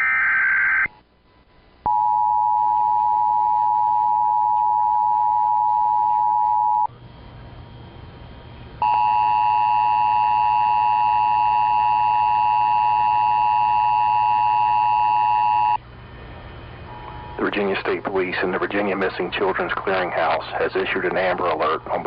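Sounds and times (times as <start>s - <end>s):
two-tone electronic alarm: 1.9s - 6.9s, 8.8s - 15.8s, 16.9s - 17.6s.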